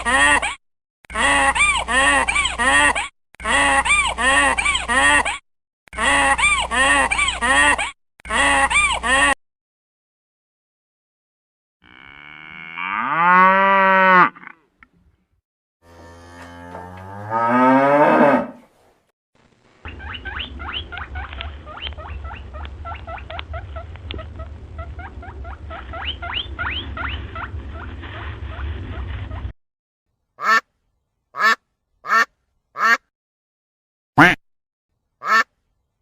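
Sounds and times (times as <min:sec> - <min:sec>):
cow mooing: 0:11.8 - 0:14.6, 0:15.9 - 0:18.6
poultry calling: 0:19.8 - 0:28.6, 0:35.2 - 0:35.5
low rumble: 0:19.9 - 0:29.5.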